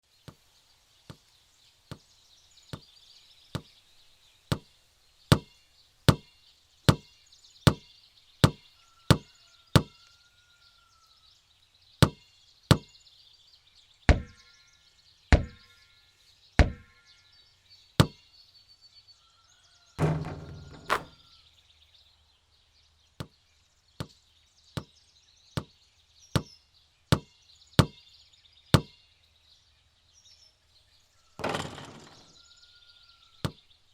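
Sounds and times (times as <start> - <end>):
faint birdsong: 0.0 - 33.9
basketball bouncing on hard court: 8.4 - 9.2, 12.0 - 12.8, 14.1 - 14.3, 15.4 - 15.6, 16.6 - 16.8, 20.0 - 21.1, 27.2 - 28.0
loud rattling impact: 20.0 - 21.2.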